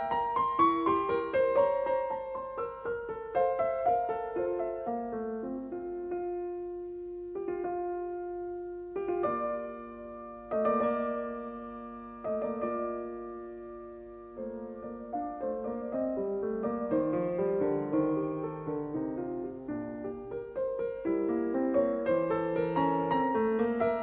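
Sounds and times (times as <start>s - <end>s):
slow solo piano music: 0.0s - 24.0s.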